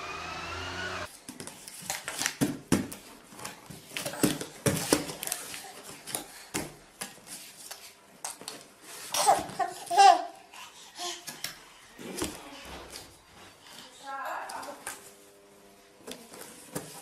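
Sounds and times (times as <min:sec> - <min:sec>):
baby laughing and babbling: 0:09.0 - 0:11.5.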